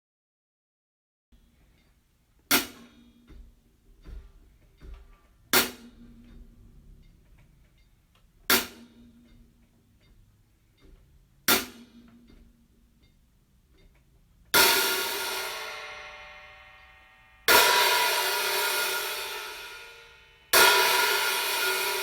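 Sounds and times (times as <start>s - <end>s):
hi-hat cymbal strokes ringing: 14.6s - 22.0s.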